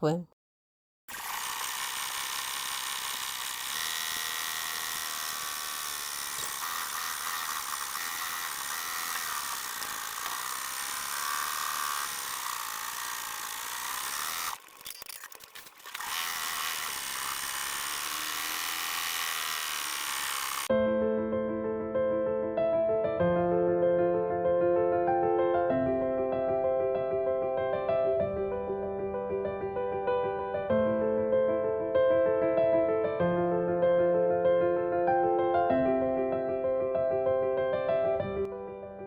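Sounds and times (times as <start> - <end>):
embroidery machine whirring: 1.1 - 20.7.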